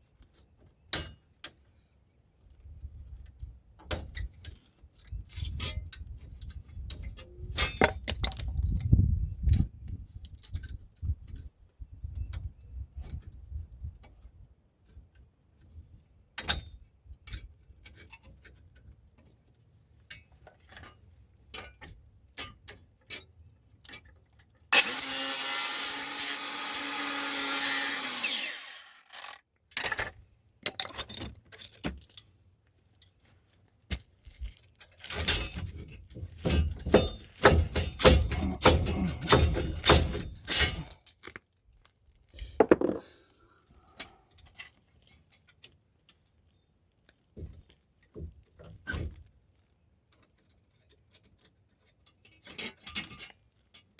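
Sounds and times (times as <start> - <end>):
power tool running: 24.8 - 29.4.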